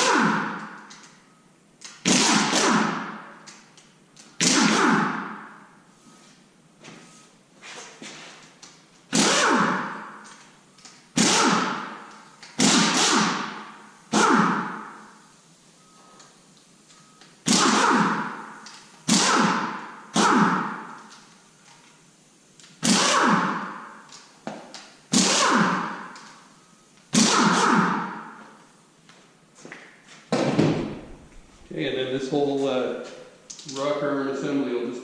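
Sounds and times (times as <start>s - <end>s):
impact wrench bursts: 0.0s - 1.2s, 1.8s - 5.8s, 8.4s - 16.4s, 17.2s - 21.8s, 22.6s - 28.6s.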